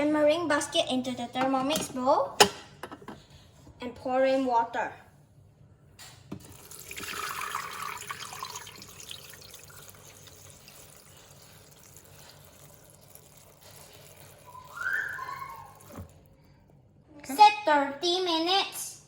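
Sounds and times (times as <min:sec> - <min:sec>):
water pouring into a bowl: 0:06.5 - 0:16.4.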